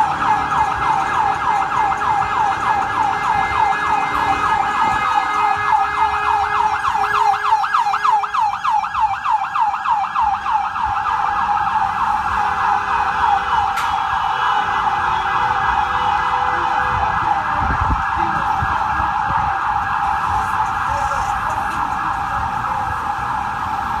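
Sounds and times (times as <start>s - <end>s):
ambulance siren yelping: 0.0s - 24.0s
traffic rumble: 0.0s - 24.0s
sharp click: 13.7s - 14.0s.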